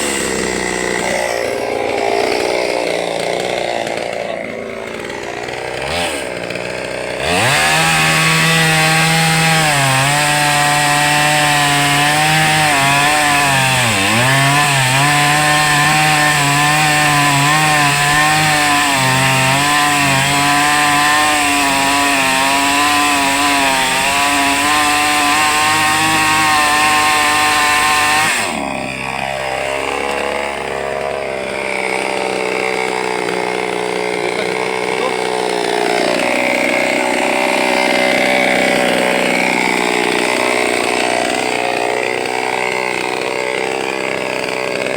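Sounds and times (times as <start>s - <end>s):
chainsaw engine revving: 0.0s - 44.9s.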